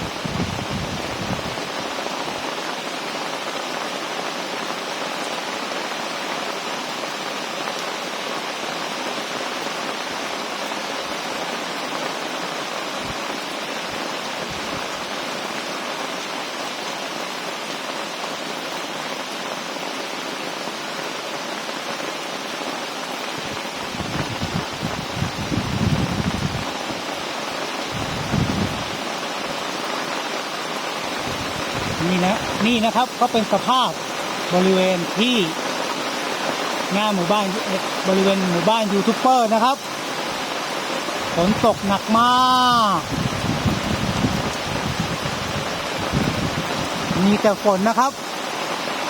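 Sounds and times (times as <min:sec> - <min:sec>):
wind buffeting microphone: 0:00.0 - 0:01.8, 0:23.4 - 0:27.0, 0:27.9 - 0:29.0, 0:31.1 - 0:32.6, 0:42.7 - 0:47.2
heavy rain: 0:00.0 - 0:49.0.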